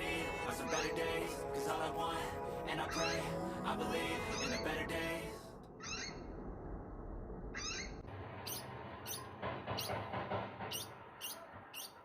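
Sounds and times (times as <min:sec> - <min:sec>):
degus chirping: 0:07.6 - 0:09.2, 0:10.7 - 0:12.0.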